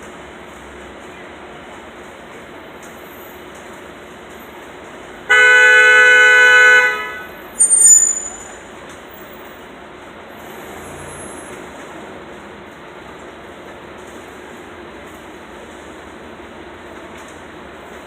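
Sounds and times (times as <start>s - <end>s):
street traffic: 0.0s - 18.0s
vehicle horn blasts: 5.3s - 8.6s.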